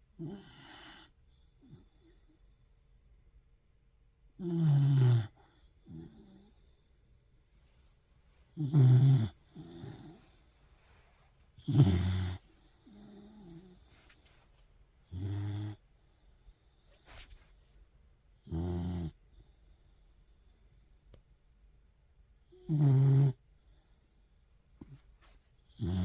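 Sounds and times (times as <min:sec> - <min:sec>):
dog snoring: 0:00.2 - 0:02.6, 0:04.4 - 0:07.0, 0:08.5 - 0:11.0, 0:11.6 - 0:14.5, 0:15.1 - 0:16.9, 0:18.4 - 0:20.5, 0:22.4 - 0:24.1, 0:25.7 - 0:26.0.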